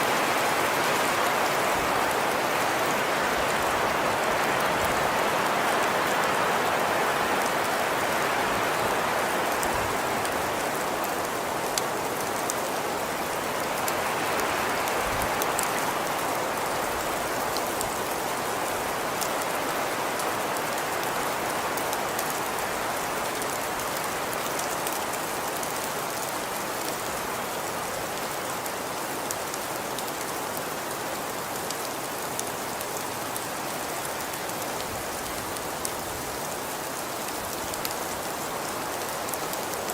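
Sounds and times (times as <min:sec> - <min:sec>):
steady rain hiss: 0:00.0 - 0:39.9.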